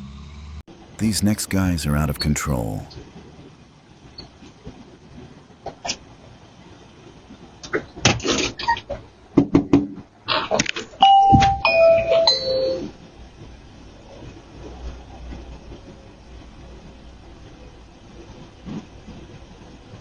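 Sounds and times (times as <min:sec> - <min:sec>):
three-note doorbell chime: 0:11.0 - 0:12.9.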